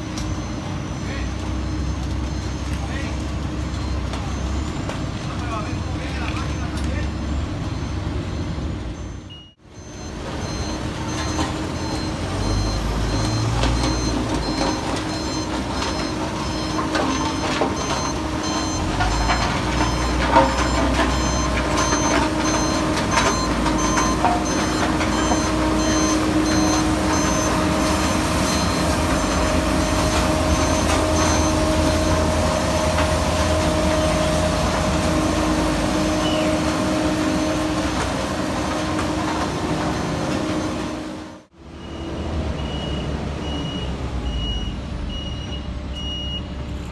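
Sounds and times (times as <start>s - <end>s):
reversing alarm beeping: 0.0s - 46.6s
machine engine running: 9.8s - 41.4s.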